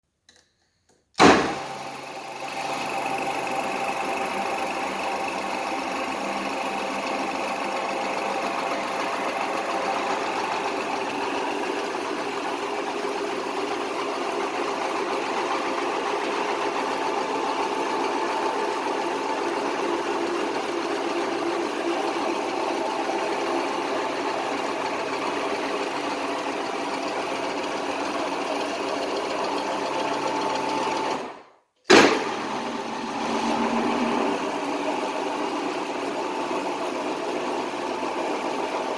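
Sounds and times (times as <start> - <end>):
car lift mechanical clatter: 1.2 - 1.9, 31.9 - 34.4.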